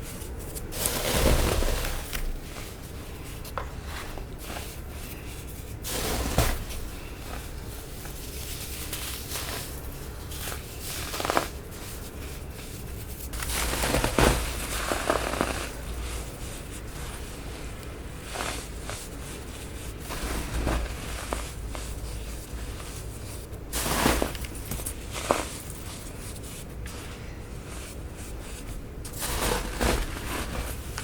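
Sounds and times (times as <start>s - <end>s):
baking soda crunching: 0.0s - 31.0s
small crackles: 0.1s - 16.6s.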